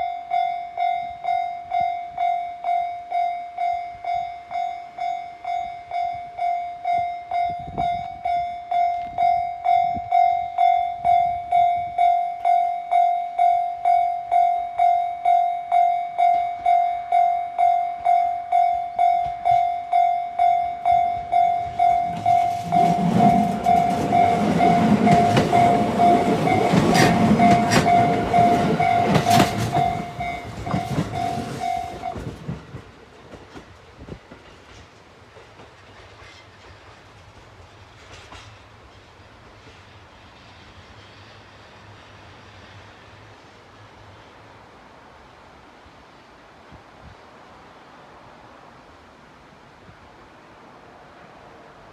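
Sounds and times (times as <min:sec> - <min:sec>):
level crossing bell ringing: 0:00.0 - 0:32.2
train rumbling over crossing: 0:00.0 - 0:51.9
train wheels clacking: 0:20.5 - 0:41.2.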